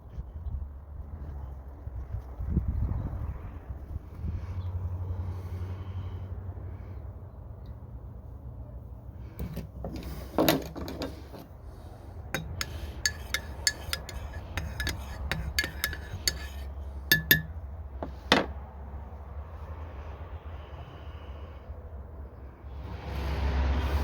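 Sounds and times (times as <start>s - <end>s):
coffee gear clinking: 9.4s - 11.6s, 12.4s - 18.6s.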